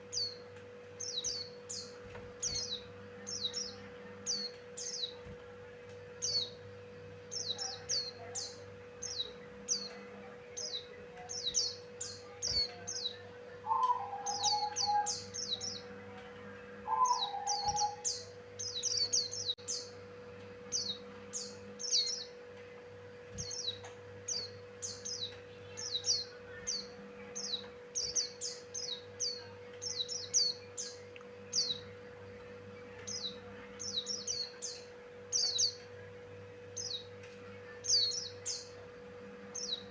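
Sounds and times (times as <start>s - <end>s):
steady electrical hum: 0.0s - 39.9s
bird high chirps: 10.6s - 15.8s, 16.8s - 19.9s.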